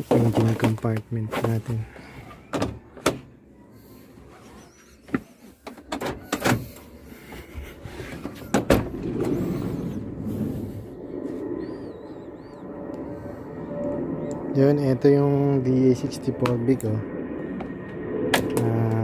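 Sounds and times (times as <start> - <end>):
low rushing noise: 7.0 - 18.3.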